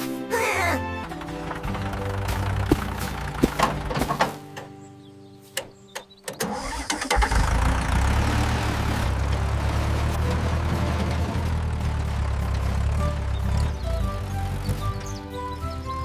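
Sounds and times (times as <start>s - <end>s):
engine starting and idling: 1.0s - 4.4s, 6.3s - 13.8s.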